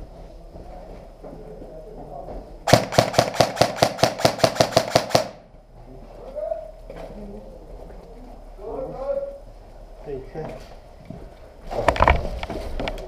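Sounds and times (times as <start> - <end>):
airsoft gun firing: 2.7 - 5.5.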